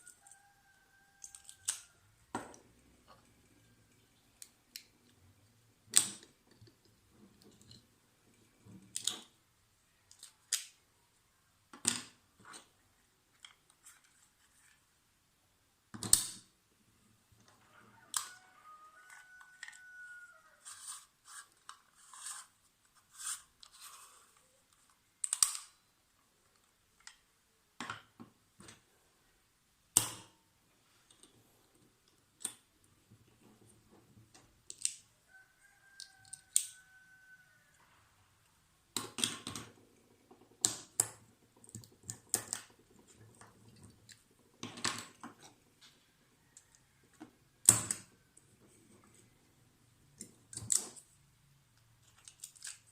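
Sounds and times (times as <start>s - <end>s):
clicks and taps of objects: 32.0s - 35.0s, 38.9s - 46.0s.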